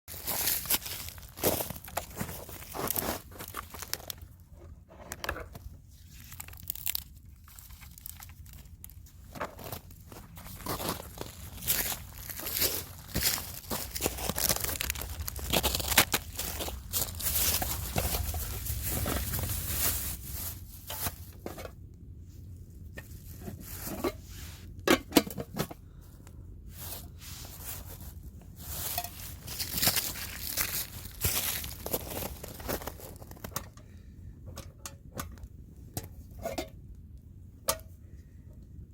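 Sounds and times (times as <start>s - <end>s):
dry twigs and leaves crunching: 0.1s - 4.5s, 5.9s - 21.6s, 26.7s - 33.7s
rustling and scraping handling noise: 0.1s - 36.9s.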